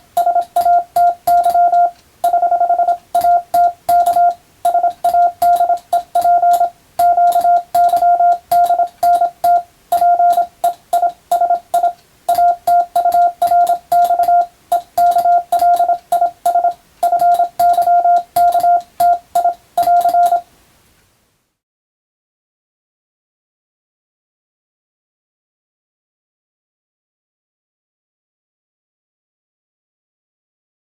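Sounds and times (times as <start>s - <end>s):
morse code tone: 0.0s - 20.5s
keying clicks: 0.1s - 20.4s.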